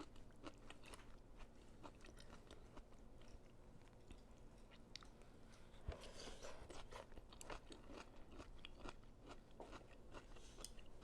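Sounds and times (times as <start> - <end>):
chewing with small crunches: 0.0 - 11.0.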